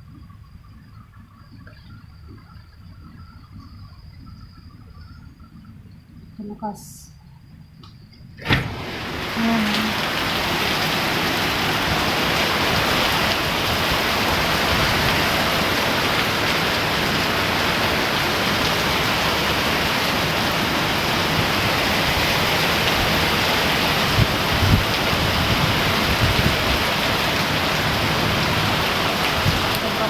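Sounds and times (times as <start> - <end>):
heavy rain pouring: 8.4 - 30.0.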